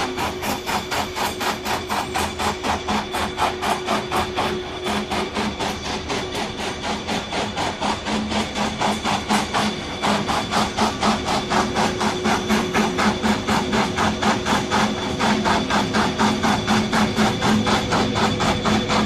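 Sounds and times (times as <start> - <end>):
machine hum: 0.0 - 19.0.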